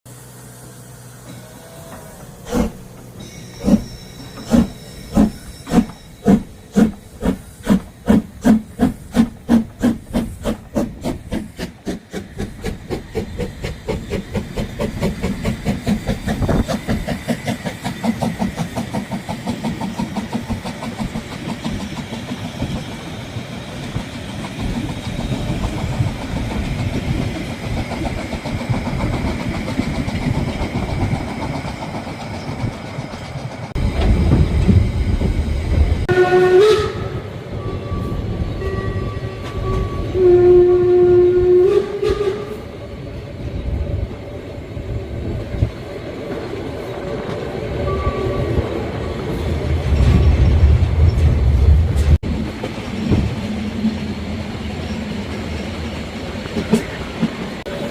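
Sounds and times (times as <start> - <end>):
steam locomotive chuffing: 0.1 - 38.4
steam locomotive rumble and hiss: 0.1 - 57.9.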